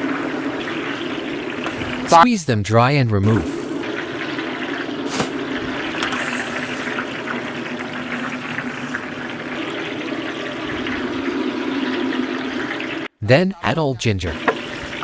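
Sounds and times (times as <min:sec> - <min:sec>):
hot oil bubbling and sizzling: 0:00.0 - 0:02.2, 0:03.2 - 0:13.1, 0:14.3 - 0:15.0.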